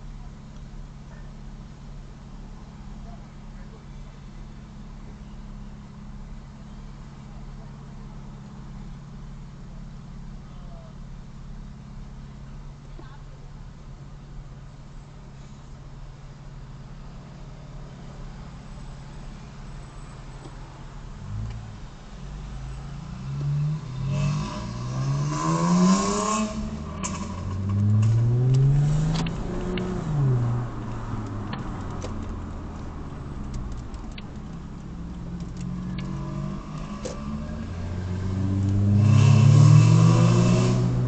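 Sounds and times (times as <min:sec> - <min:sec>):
exhaust pops and crackles: 0:12.2 - 0:13.8, 0:26.6 - 0:37.6
car engine revving: 0:16.7 - 0:41.0.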